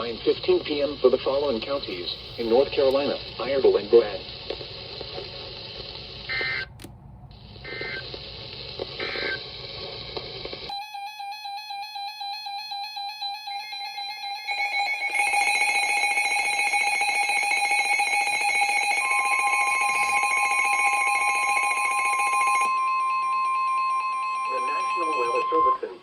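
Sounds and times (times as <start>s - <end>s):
electronic alarm tone: 10.7s - 26.0s
higher steady tone: 19.0s - 26.0s.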